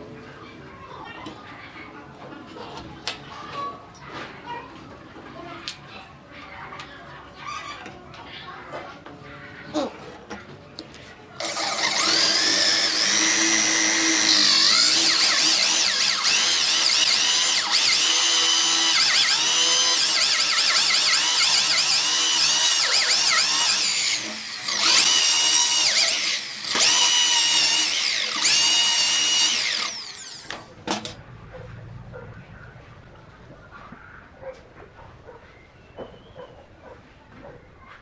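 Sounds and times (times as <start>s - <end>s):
power tool motor whining: 11.4s - 30.7s.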